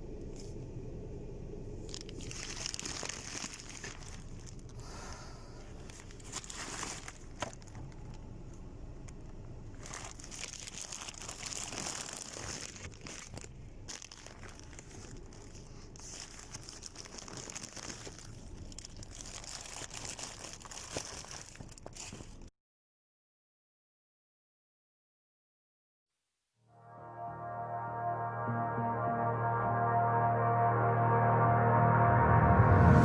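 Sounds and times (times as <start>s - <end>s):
rustling and crinkling handling: 1.8s - 22.5s.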